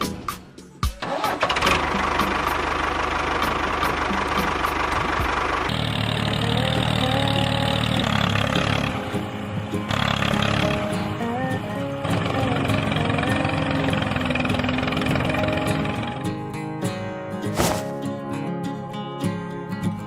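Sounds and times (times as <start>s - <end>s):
small engine running: 1.0s - 9.0s, 12.1s - 16.1s.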